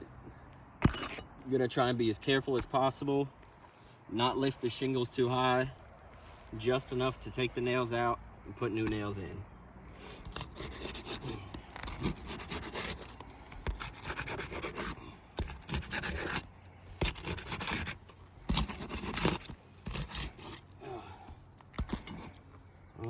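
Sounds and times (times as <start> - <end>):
pry bar scraping shingles: 10.2 - 22.6.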